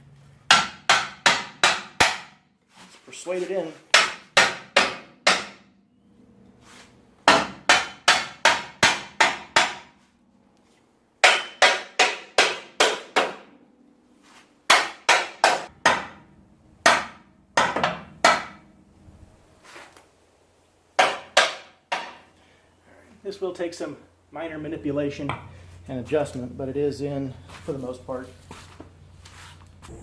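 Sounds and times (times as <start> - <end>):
hammer striking steel: 0.5 - 2.4, 3.9 - 5.6, 11.2 - 13.4, 14.7 - 16.2, 16.8 - 18.6, 21.0 - 22.3.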